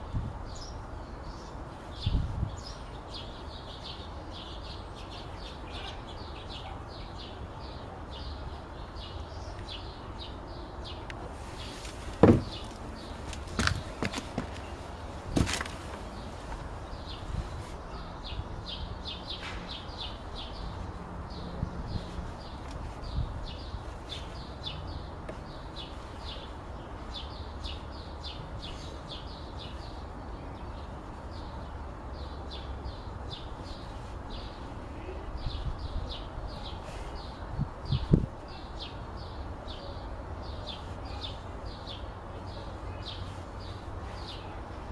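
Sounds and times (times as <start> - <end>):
songbird chirping: 0.6 - 20.8.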